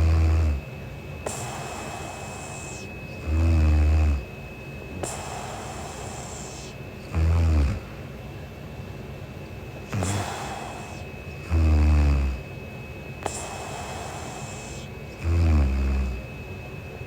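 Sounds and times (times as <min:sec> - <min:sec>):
woman snoring: 0:00.0 - 0:04.3, 0:05.0 - 0:07.9, 0:09.8 - 0:12.5, 0:13.2 - 0:16.3
hiss of breath: 0:01.3 - 0:02.9, 0:05.0 - 0:06.8, 0:09.9 - 0:11.1, 0:13.2 - 0:15.0.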